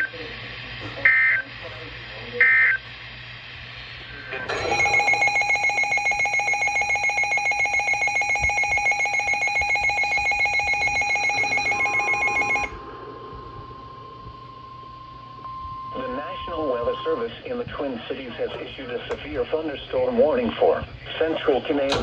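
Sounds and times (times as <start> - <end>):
pulsing electronic alert tone: 4.5 - 12.8.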